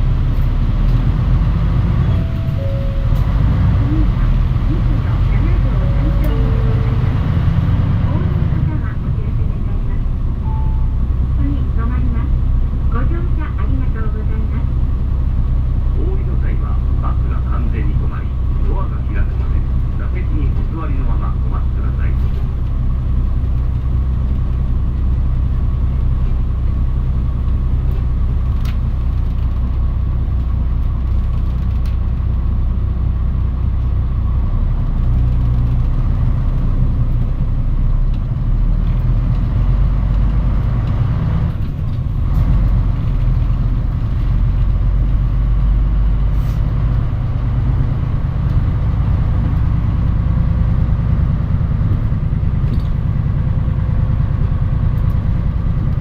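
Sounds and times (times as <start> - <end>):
bus diesel engine droning: 0.0 - 56.0.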